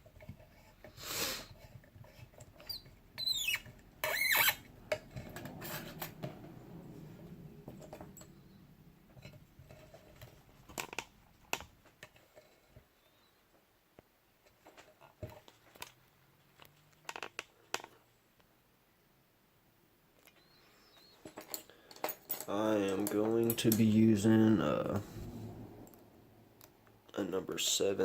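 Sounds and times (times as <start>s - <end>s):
padlock scraping in vise: 1.6s - 6.9s.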